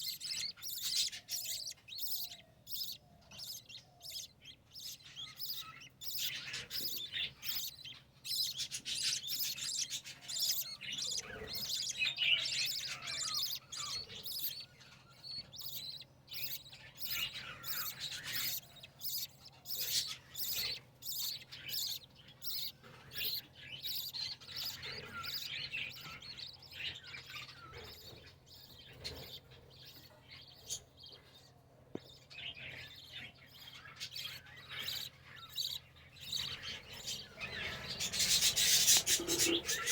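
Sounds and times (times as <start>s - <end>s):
small cage birds chirping: 0.0s - 39.9s.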